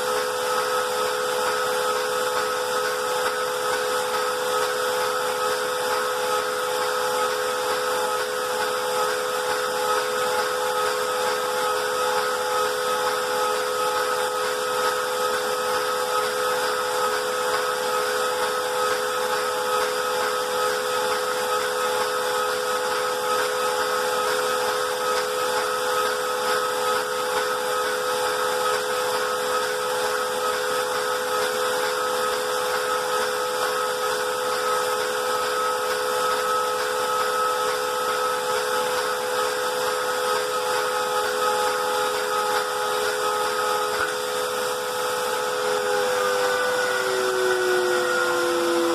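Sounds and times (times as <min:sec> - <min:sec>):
grinder spindle whining: 0:41.4 - 0:48.9.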